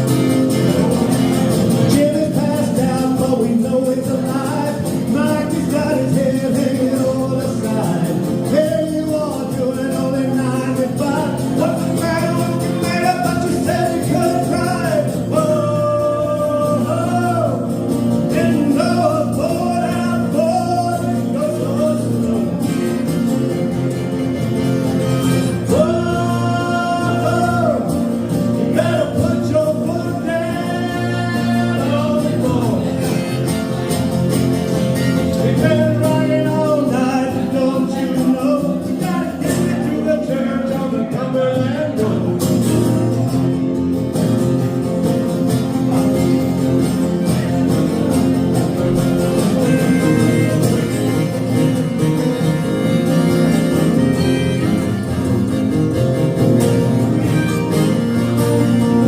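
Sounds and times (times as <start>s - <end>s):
man singing: 0.0s - 24.1s, 24.7s - 43.6s
guitar accompaniment: 0.0s - 59.0s.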